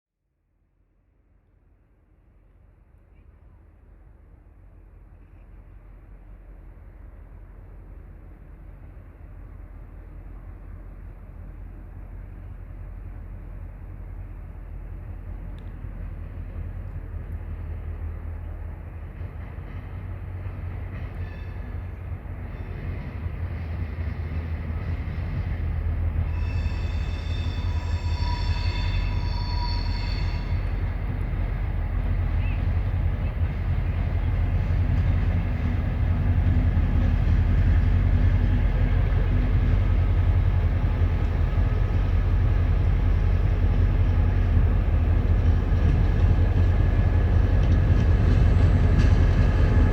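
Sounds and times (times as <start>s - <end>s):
diesel locomotive engine drone: 1.4s - 49.9s
locomotive air horn blast: 26.2s - 30.9s.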